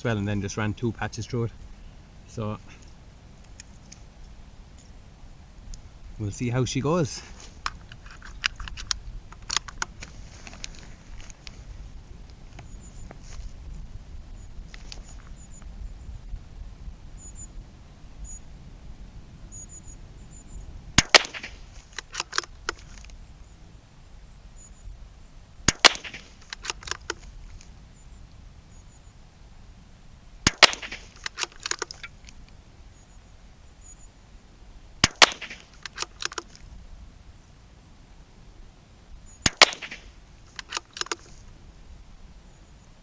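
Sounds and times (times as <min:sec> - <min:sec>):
rifle bolt clicking: 0:07.6 - 0:10.1, 0:21.0 - 0:23.0, 0:25.7 - 0:27.3, 0:30.5 - 0:32.4, 0:35.0 - 0:36.6, 0:39.5 - 0:41.4
rifle shots: 0:21.0 - 0:22.6, 0:25.7 - 0:27.2, 0:30.4 - 0:32.1, 0:35.0 - 0:36.5, 0:39.4 - 0:41.3.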